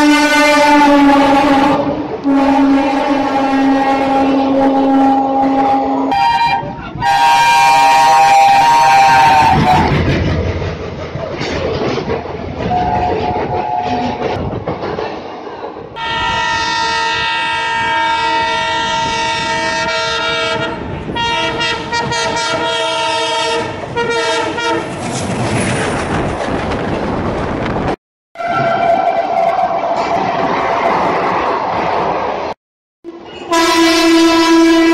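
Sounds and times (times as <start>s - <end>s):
locomotive air horn: 0.0s - 9.9s, 16.0s - 24.9s, 28.4s - 29.6s, 33.0s - 34.9s
passing train rumbling: 0.0s - 34.9s.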